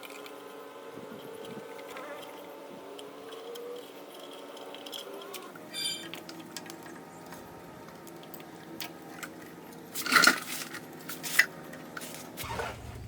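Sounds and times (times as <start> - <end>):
hands handling wiring and tape: 1.2 - 12.4
squeaky rasp: 3.2 - 6.2.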